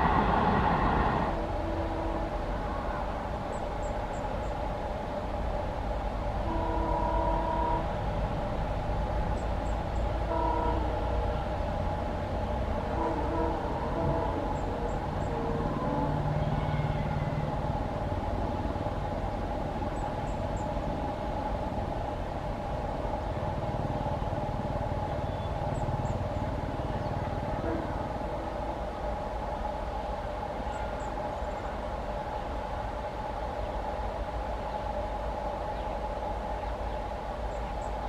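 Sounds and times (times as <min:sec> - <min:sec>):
train horn blasts: 0:00.0 - 0:03.4, 0:06.4 - 0:19.0, 0:24.1 - 0:29.2
train rumbling past: 0:00.0 - 0:38.0.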